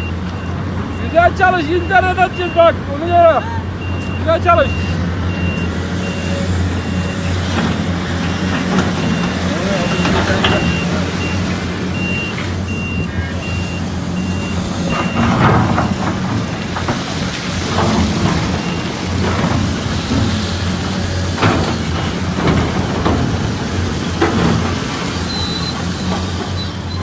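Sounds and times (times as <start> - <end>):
heavy diesel engines running: 0.0 - 27.0
reversing alarm beeping: 0.0 - 27.0
knocks and clatters of rock: 14.7 - 27.0.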